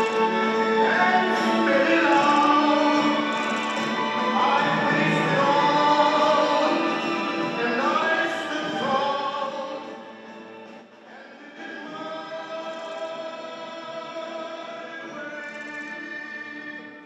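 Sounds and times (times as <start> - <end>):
choir singing sacred music: 0.0 - 10.3.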